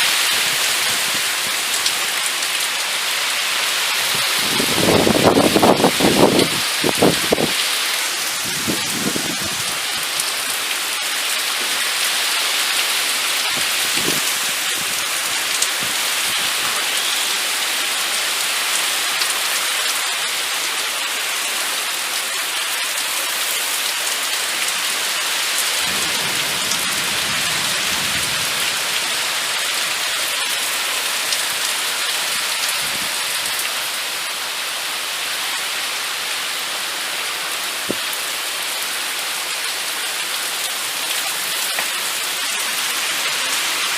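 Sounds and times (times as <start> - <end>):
heavy rain falling: 0.0 - 43.9
distant thunder rumble: 25.8 - 29.0.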